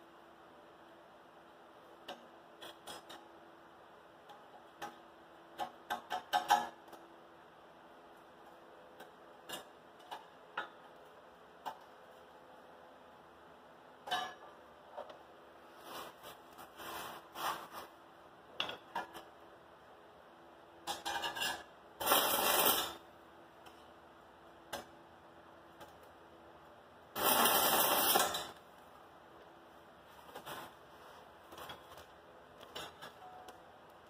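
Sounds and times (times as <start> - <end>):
welding arc sputters and clicks: 20.9 - 23.8, 27.1 - 28.7
welding arc hissing: 22.0 - 23.0, 27.2 - 28.6.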